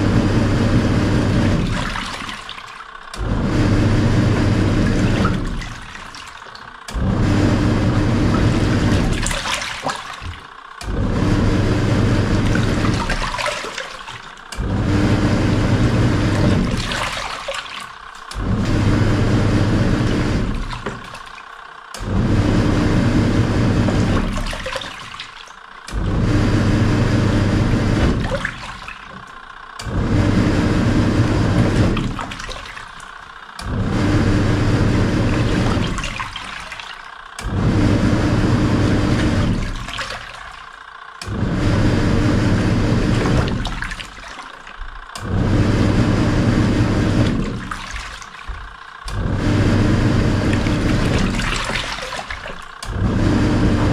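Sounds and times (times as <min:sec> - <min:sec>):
washing machine motor humming: 0:00.0 - 0:53.9
water churning: 0:01.0 - 0:53.9.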